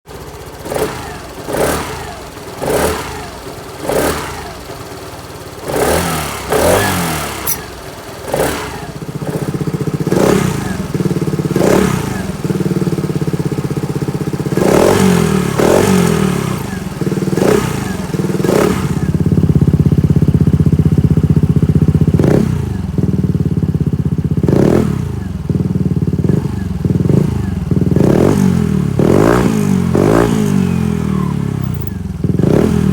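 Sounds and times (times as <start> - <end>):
scooter engine idling: 0.1 - 32.9
scooter throttle blips: 4.6 - 12.8, 31.0 - 32.9.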